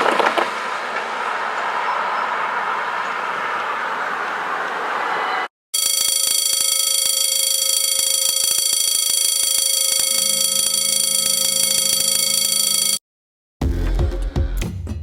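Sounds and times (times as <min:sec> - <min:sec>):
fire alarm tone: 0:05.8 - 0:13.0.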